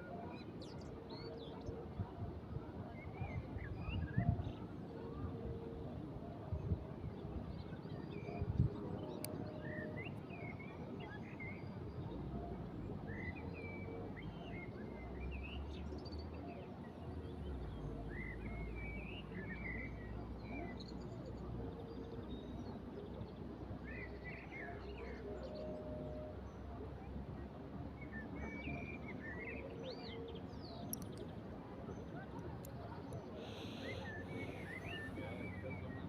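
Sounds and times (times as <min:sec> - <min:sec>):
songbirds chirping: 0:27.9 - 0:36.0.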